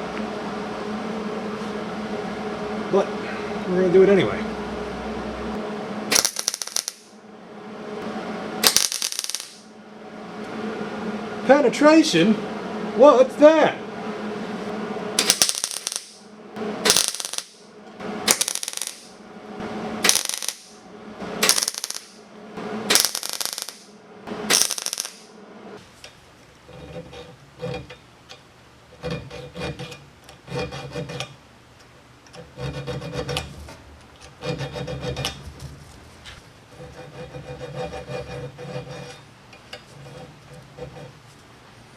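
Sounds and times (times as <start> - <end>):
filing strokes on metal: 29.0 - 31.3, 36.8 - 39.2.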